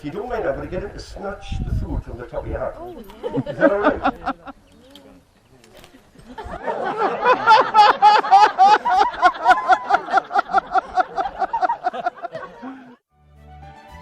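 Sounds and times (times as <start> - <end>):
person laughing: 3.2 - 4.6, 6.3 - 13.0.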